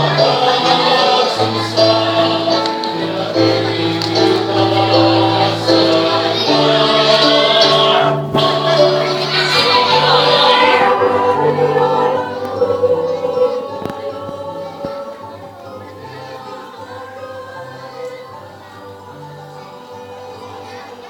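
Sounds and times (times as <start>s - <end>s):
choir singing a hymn: 0.0s - 21.0s.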